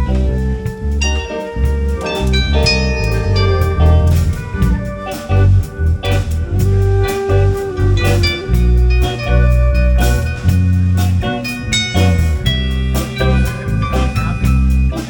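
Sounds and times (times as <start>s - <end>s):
band playing instrumental: 0.0s - 15.0s.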